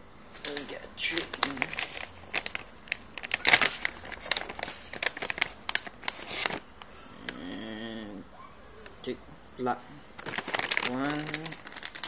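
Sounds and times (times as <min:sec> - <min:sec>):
wrapper crinkling: 0:00.3 - 0:06.7, 0:10.2 - 0:12.0.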